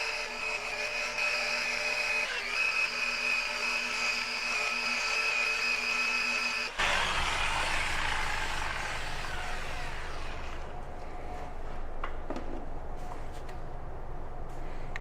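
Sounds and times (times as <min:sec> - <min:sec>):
rotary grinding tool spinning down: 0:00.0 - 0:10.8
low steady hum: 0:08.7 - 0:15.0.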